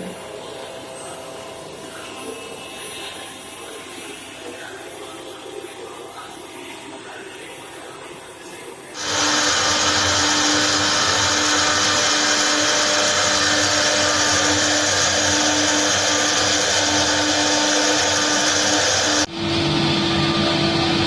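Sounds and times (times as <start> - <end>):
router spindle cutting wood: 9.0 - 19.3.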